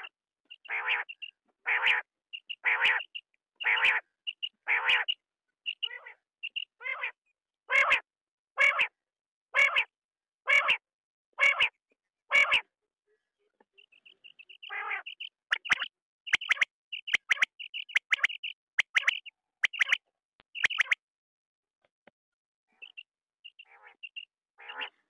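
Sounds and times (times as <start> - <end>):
quail quick high chirps: 0.0 - 7.1, 13.8 - 21.0, 22.8 - 25.0
quail raspy calls: 0.0 - 8.0, 8.6 - 9.0, 9.6 - 10.8, 11.4 - 12.6, 13.8 - 20.0, 20.6 - 21.0, 22.7 - 25.0.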